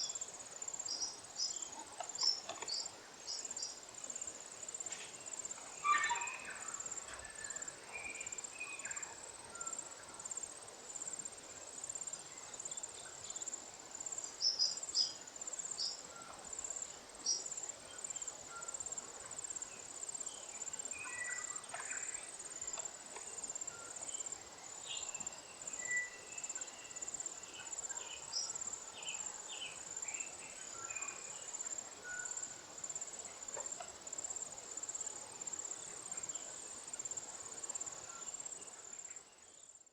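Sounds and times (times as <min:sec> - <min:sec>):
bird calls and twitters: 0:05.8 - 0:09.1.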